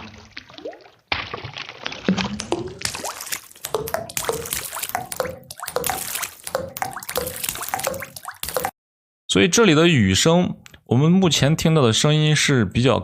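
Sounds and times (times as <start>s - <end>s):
raindrops plipping into water: 0.0s - 8.8s.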